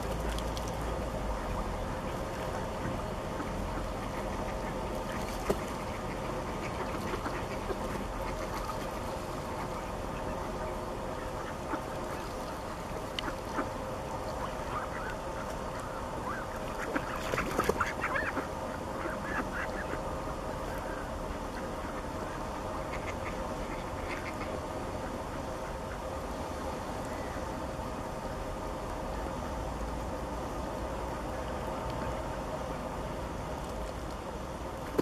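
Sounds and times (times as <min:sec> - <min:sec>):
steady background hum: 0:00.0 - 0:35.0
mallards quacking: 0:01.4 - 0:26.2.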